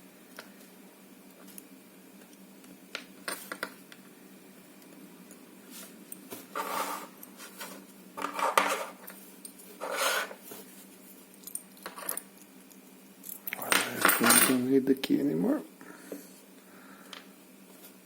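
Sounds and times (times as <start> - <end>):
metal parts clinking and rattling: 13.2 - 14.6.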